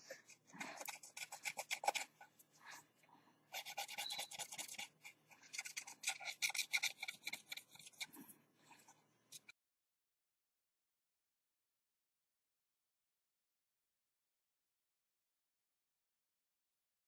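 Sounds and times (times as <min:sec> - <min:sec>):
scratchy rubbing on phone frame: 0:00.3 - 0:02.4, 0:03.5 - 0:08.3.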